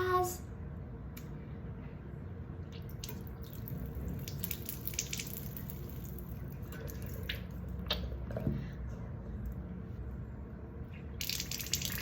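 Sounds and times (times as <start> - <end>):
water dripping into a sink: 2.7 - 8.1, 11.2 - 12.0.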